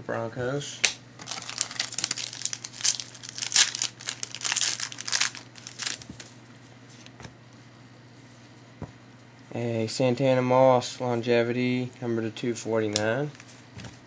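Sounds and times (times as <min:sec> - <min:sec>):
wrapper crinkling and tearing: 0:01.2 - 0:06.3.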